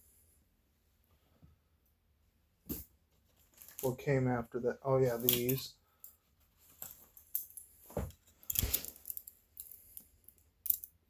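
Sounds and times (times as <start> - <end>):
metal knives clicking and clinking: 5.2 - 5.6.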